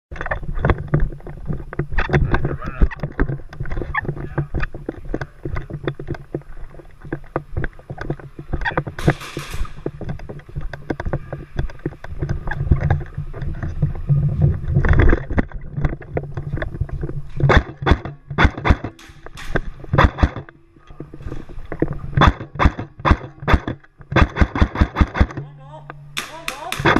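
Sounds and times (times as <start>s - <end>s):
low rumble of wind: 0.1s - 24.4s
gear clicks and knocks: 0.1s - 25.5s
airsoft guns firing: 9.0s - 9.8s, 17.5s - 20.4s, 22.2s - 25.4s, 26.2s - 26.9s.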